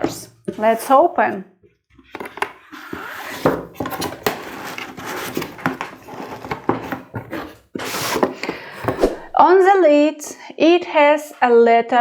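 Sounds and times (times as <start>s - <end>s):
cardboard box lid scraping: 2.2s - 9.4s.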